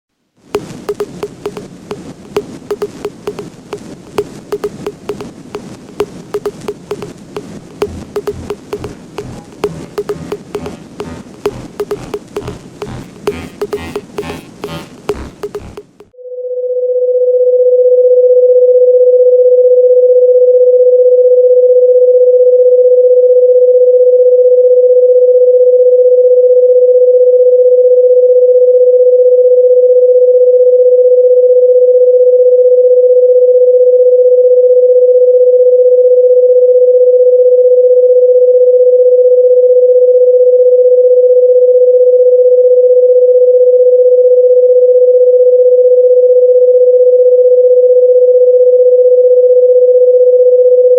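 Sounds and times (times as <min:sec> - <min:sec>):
electronic sine-wave tone: 0:00.6 - 0:16.1.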